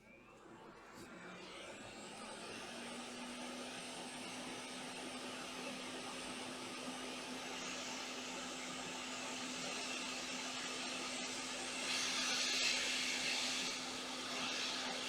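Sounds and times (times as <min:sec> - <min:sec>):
hot air station hissing: 0:07.6 - 0:15.0.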